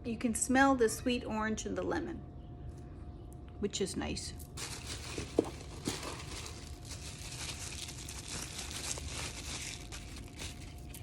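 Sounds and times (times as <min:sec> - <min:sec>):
packaging crinkling: 0:04.6 - 0:11.0.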